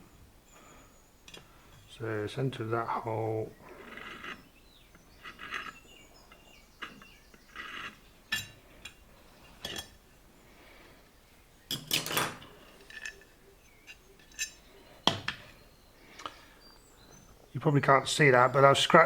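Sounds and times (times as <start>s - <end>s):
compass point scratching metal: 3.7s - 8.9s.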